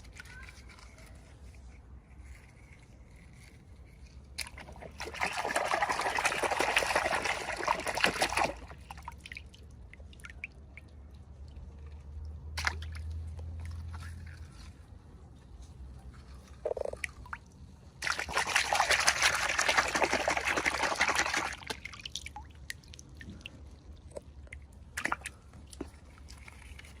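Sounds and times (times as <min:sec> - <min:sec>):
liquid trickling and pouring: 0:04.3 - 0:15.0, 0:16.3 - 0:27.0.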